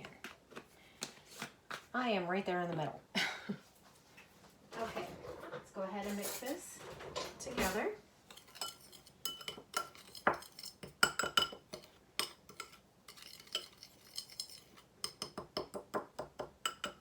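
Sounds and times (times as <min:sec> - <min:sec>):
utensil clinking against bowl: 0:07.4 - 0:17.0.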